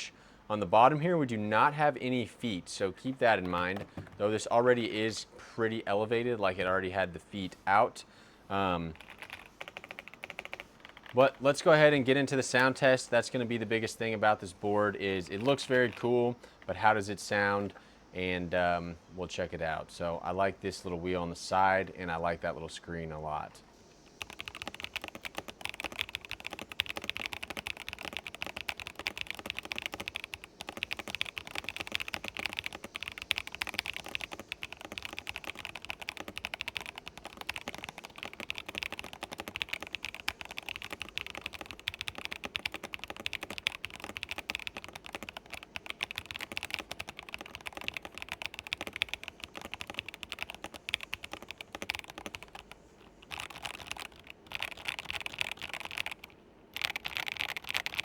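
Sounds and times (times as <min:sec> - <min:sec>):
fast typing on mechanical keyboard: 0:08.6 - 0:11.9, 0:15.4 - 0:16.1, 0:24.1 - 0:58.0.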